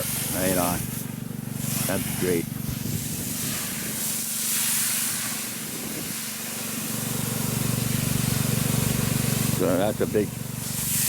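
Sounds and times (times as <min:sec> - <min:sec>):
water hissing on smouldering ground: 0:00.0 - 0:11.0.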